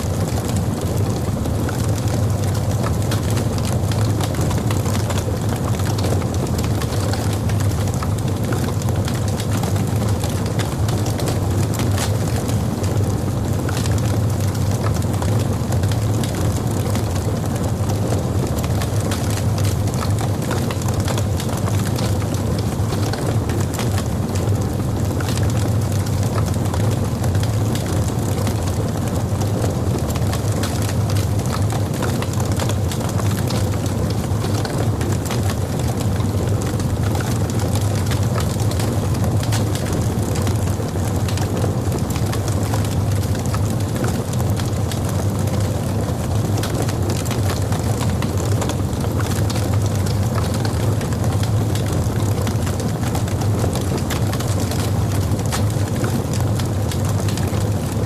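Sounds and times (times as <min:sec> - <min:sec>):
logs crackling in fireplace: 0:00.0 - 0:58.0.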